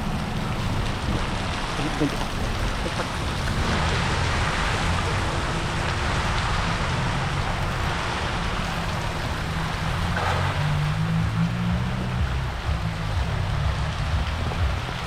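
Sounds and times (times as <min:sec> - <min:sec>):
heavy rain pouring: 0:00.0 - 0:15.0
low rumble: 0:00.0 - 0:15.0.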